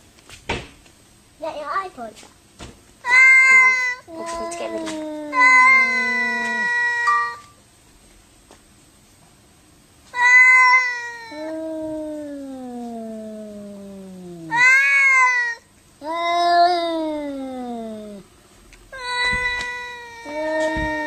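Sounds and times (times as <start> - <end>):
cat yowling: 3.1 - 7.4, 10.2 - 18.3, 18.9 - 21.0.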